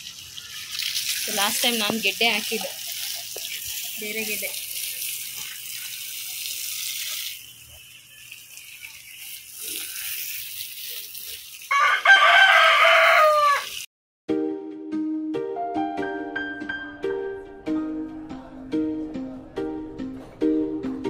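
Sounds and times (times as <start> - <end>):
running water hiss: 0.0 - 13.9
rooster crowing: 11.7 - 13.8.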